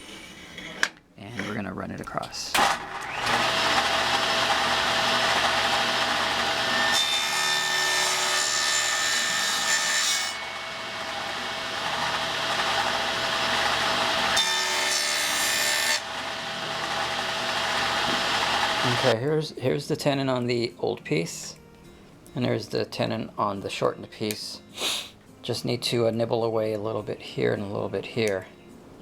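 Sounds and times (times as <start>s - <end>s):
saw blade cutting wood: 2.6s - 19.1s
table saw motor hum: 2.6s - 19.1s.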